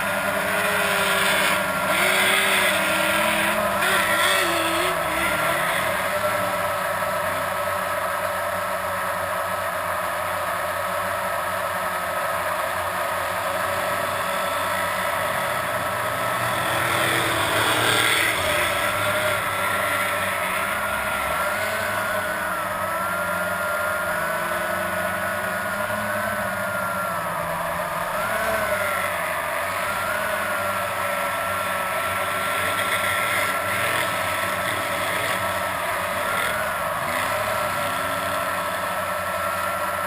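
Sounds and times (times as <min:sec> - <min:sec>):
quadcopter motors whining: 0:00.0 - 0:10.5, 0:11.2 - 0:40.0.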